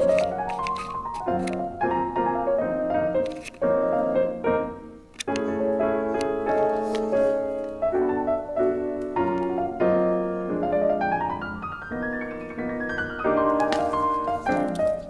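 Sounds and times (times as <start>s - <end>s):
piano music: 0.0s - 15.0s.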